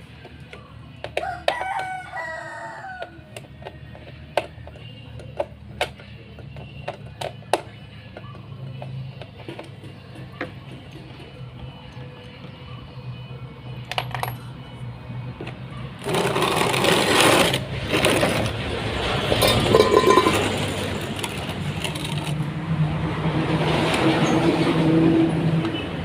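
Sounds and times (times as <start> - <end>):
metal parts clattering and rattling: 19.3 - 22.4.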